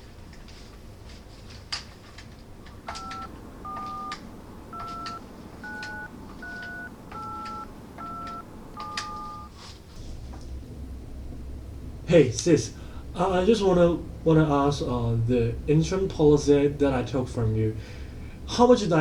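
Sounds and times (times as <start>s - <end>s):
sharp clicks: 1.7s - 9.5s
phone keypad beeps: 2.8s - 9.5s.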